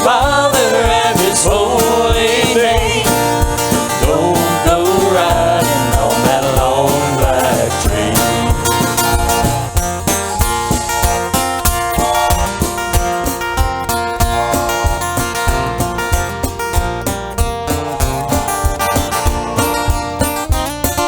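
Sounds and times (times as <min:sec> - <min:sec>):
live country band playing: 0:00.0 - 0:21.0
strummed acoustic guitar: 0:00.0 - 0:21.0.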